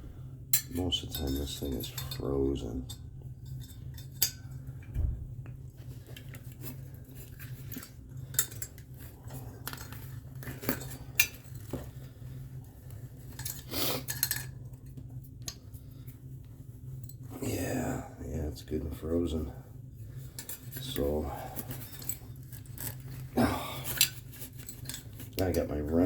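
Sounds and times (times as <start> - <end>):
steady low hum: 0.0 - 26.0
metal tools clinking and scraping: 0.6 - 4.8, 6.0 - 12.0, 13.2 - 15.0, 20.2 - 26.0.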